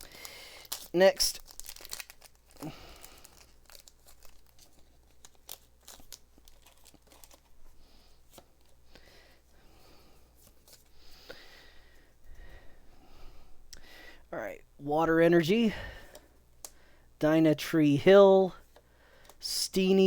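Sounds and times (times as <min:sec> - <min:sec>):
wrapper tearing and crinkling: 0:00.0 - 0:07.6.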